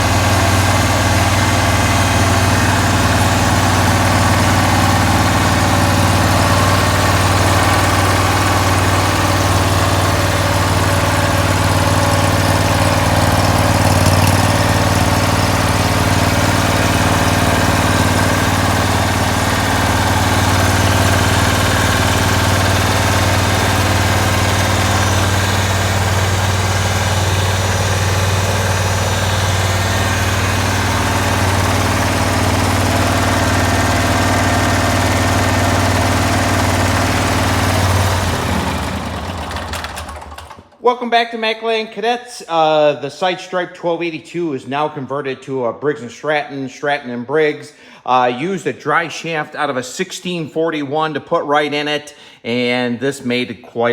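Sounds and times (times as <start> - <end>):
garden tractor engine idling: 0.0 - 40.8.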